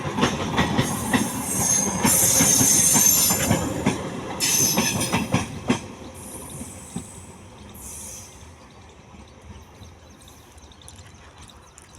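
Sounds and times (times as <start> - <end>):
train passing: 0.0 - 9.8.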